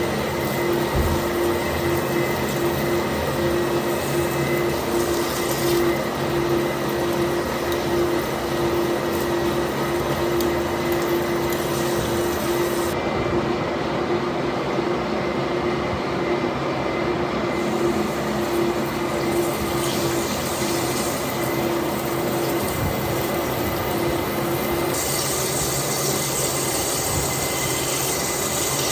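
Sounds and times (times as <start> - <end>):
lathe running: 0.0 - 13.0, 17.4 - 28.9.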